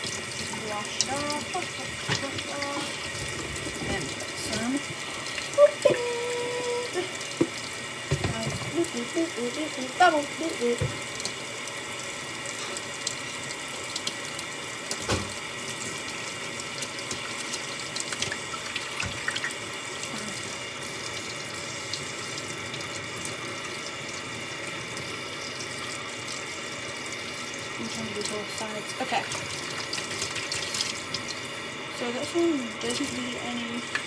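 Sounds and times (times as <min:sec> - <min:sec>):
tap running into sink: 0:00.0 - 0:06.3, 0:06.9 - 0:11.5, 0:13.9 - 0:16.1, 0:16.7 - 0:19.6.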